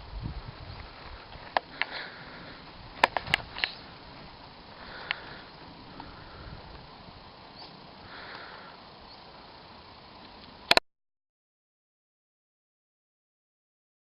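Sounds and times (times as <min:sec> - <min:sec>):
background hiss: 0:00.0 - 0:10.8
sharp clicks: 0:03.0 - 0:03.8.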